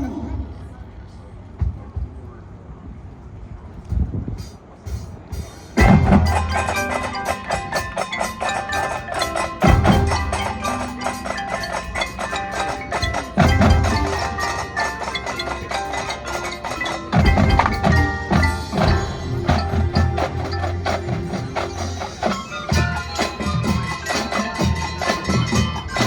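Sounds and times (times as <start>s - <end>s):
marching band playing: 4.9s - 26.0s
heavy low drum hits: 17.2s - 22.2s.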